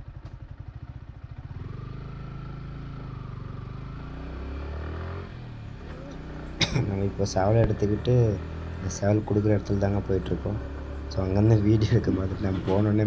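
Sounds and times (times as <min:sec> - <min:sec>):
motorcycle engine pulling away: 0:00.0 - 0:13.0.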